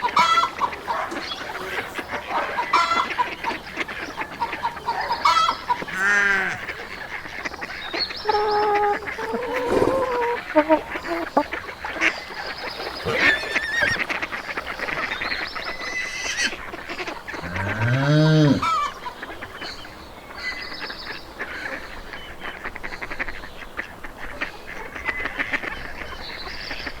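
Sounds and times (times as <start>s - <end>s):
farmyard birds chirping: 0.0s - 27.0s
long low animal call: 5.2s - 6.9s, 8.2s - 11.5s, 13.0s - 14.0s, 17.3s - 18.9s.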